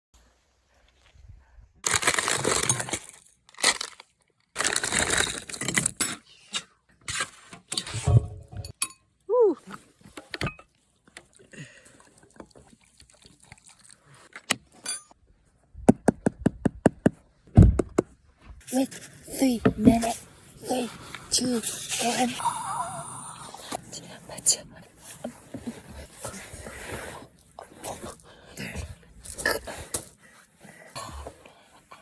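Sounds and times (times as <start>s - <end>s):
packaging rustling: 1.8s - 4.0s, 4.6s - 5.7s.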